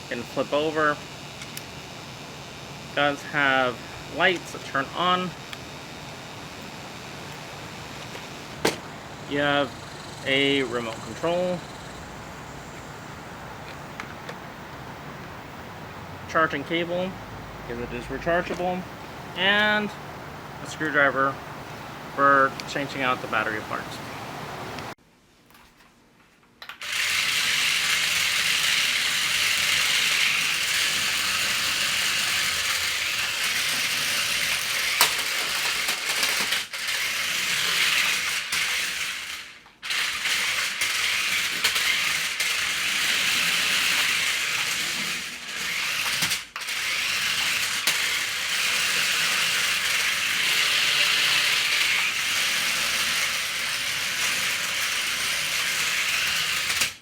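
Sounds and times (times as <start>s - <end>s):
toy car electric motors running: 0.0s - 14.1s, 26.8s - 57.0s.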